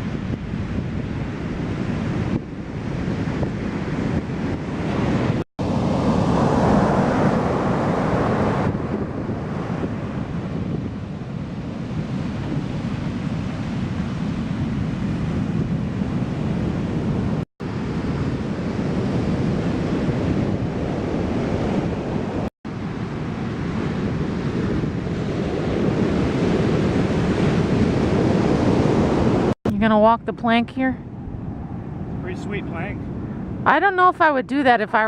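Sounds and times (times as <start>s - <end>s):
ocean surf breaking: 0.0s - 29.6s, 31.1s - 34.4s
wind buffeting microphone: 0.0s - 35.0s.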